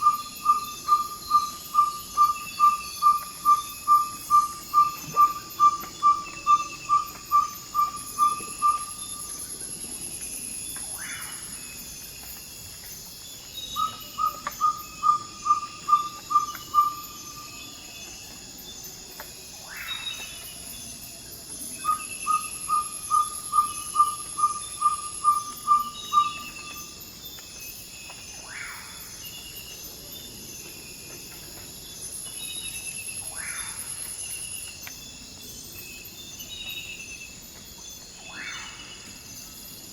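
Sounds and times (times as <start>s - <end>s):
owl whistling toop calls: 0.0s - 9.2s, 13.8s - 17.4s, 21.8s - 26.8s
faint night bird calls: 0.0s - 39.9s
high insect chorus: 0.0s - 39.9s.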